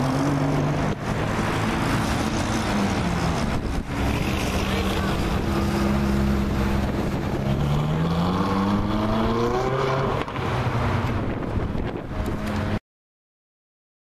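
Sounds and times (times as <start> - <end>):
sports car engine revving: 4.0 - 10.5.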